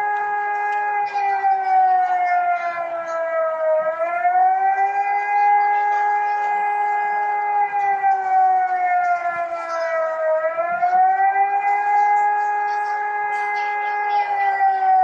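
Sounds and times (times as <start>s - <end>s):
warning siren long tone: 0.0s - 15.0s.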